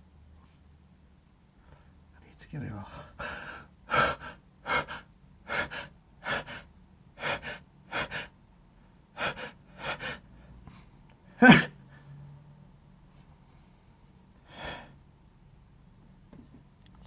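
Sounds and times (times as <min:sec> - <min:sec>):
man gasping breaths: 0:03.0 - 0:08.3, 0:09.2 - 0:12.0, 0:14.4 - 0:15.0
man sneezing: 0:11.4 - 0:11.8.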